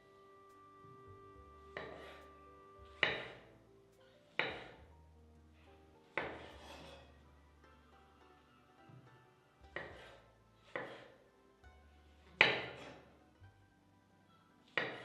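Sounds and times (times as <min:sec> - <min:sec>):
soft background music: 0:00.0 - 0:15.0.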